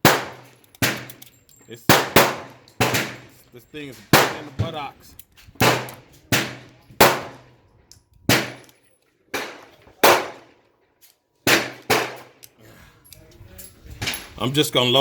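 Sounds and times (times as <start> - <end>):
pistol gunshots with echo: 0.0 - 1.2, 1.9 - 3.4, 4.1 - 4.8, 5.6 - 7.6, 8.3 - 8.7, 9.3 - 10.6, 11.4 - 12.4.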